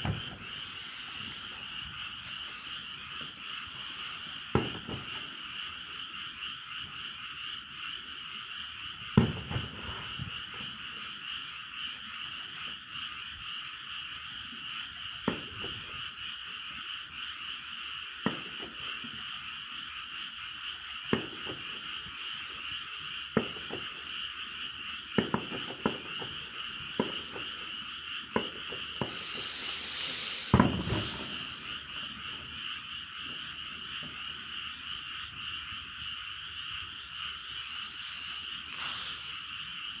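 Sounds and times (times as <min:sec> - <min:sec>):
firework hiss: 0:00.0 - 0:05.2, 0:27.0 - 0:31.8, 0:36.8 - 0:39.7
distant fireworks bangs: 0:00.0 - 0:05.3, 0:25.2 - 0:31.7
frogs calling: 0:00.0 - 0:08.8, 0:21.8 - 0:23.4, 0:25.8 - 0:40.0.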